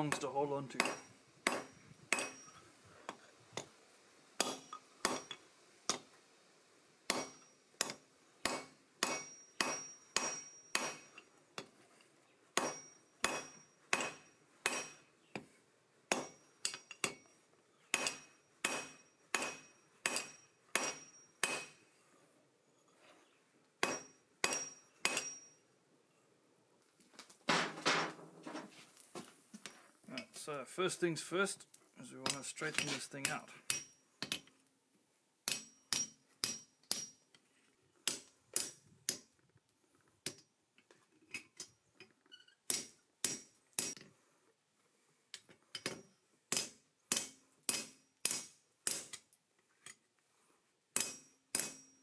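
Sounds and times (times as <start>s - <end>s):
hammer striking steel on anvil: 0.0s - 2.6s, 4.4s - 6.0s, 7.1s - 11.7s, 12.6s - 15.1s, 16.1s - 17.2s, 17.9s - 21.8s, 23.8s - 25.6s, 32.2s - 34.4s, 35.5s - 37.2s, 38.0s - 39.2s, 42.7s - 44.0s, 45.8s - 49.2s, 51.0s - 52.0s.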